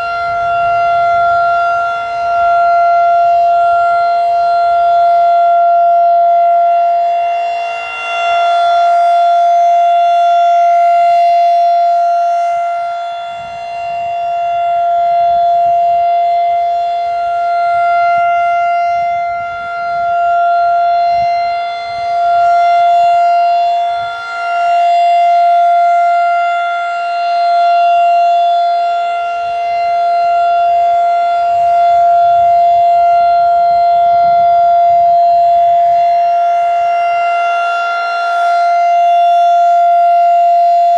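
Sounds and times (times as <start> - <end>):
rotating warning siren: 0.0 - 40.9.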